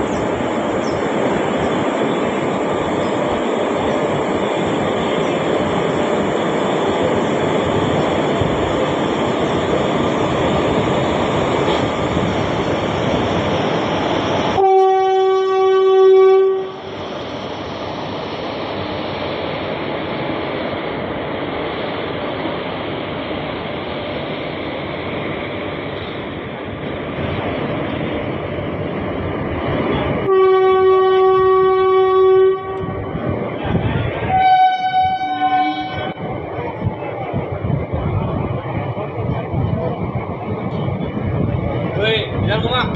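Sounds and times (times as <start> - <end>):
train running noise: 0.0 - 42.9
locomotive horn blasts: 14.6 - 16.8, 30.2 - 33.0, 34.3 - 36.2.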